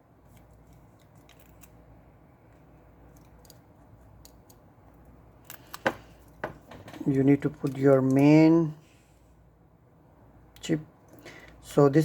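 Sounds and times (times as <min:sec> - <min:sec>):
low steady hum: 0:00.0 - 0:12.0
clicks and taps of phone parts: 0:05.4 - 0:07.0.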